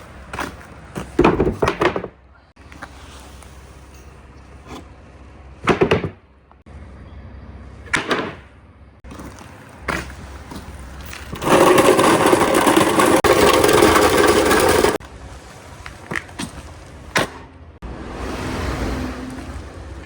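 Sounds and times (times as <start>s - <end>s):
marbles rolling on track: 11.2s - 15.0s.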